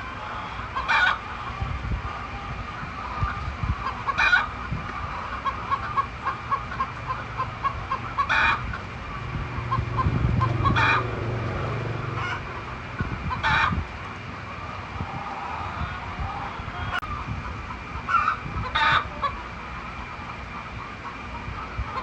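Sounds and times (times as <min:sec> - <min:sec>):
chicken squawking calls: 0:00.0 - 0:11.2, 0:14.5 - 0:17.3, 0:18.0 - 0:19.5
chickens clucking: 0:00.0 - 0:22.0.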